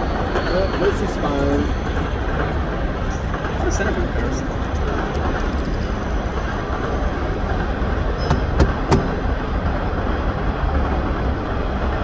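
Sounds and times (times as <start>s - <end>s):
low vehicle rumble: 3.2s - 10.3s.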